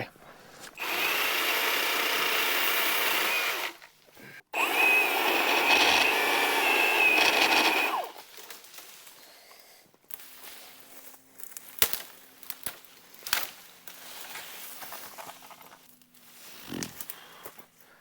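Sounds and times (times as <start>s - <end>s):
electric pole saw motor whine: 0.8s - 3.8s, 4.6s - 8.3s
saw chain cutting branch: 4.6s - 8.6s.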